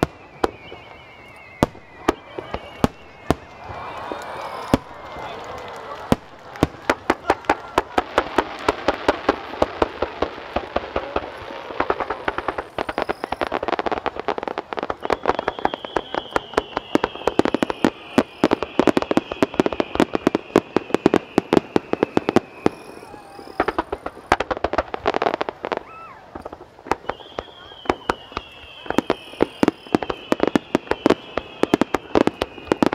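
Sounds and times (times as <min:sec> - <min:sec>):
high falling whistle: 0:00.0 - 0:05.4, 0:12.1 - 0:13.5, 0:15.0 - 0:24.3, 0:27.0 - 0:32.9
fireworks bursts and crackling bangs: 0:00.0 - 0:32.9.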